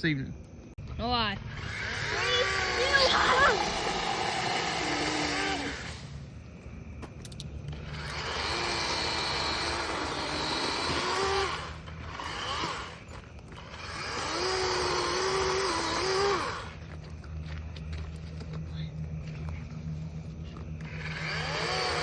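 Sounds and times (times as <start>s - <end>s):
chainsaw cutting wood: 1.4s - 6.4s, 7.1s - 16.8s, 20.8s - 22.0s.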